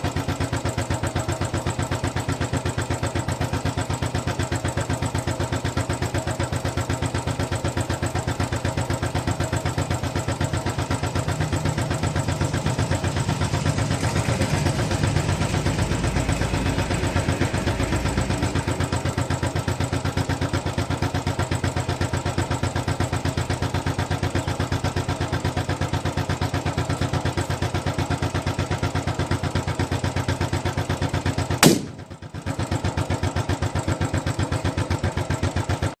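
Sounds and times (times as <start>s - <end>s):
motorcycle engine idling: 0.0s - 36.0s
exhaust backfire bang: 31.6s - 32.6s.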